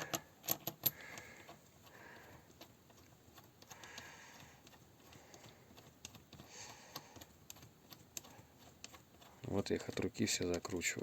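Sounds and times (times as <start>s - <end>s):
metallic clicks of bolts threaded: 0.0s - 1.5s.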